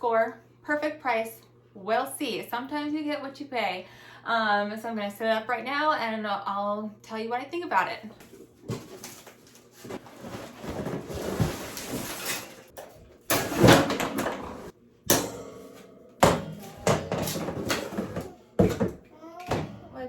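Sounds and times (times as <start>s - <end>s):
packaging rustling and scraping: 8.3s - 12.7s
knocks and thumps of parts: 10.3s - 19.9s.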